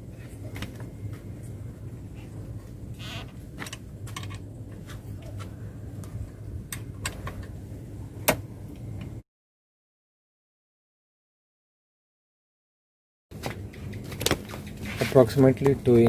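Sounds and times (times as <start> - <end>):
steady low hum: 0.0 - 9.2, 13.3 - 16.0.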